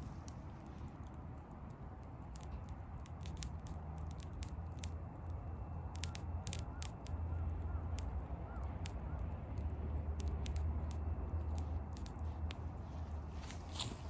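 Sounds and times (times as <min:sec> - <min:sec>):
bonfire crackling and popping: 0:00.0 - 0:14.0.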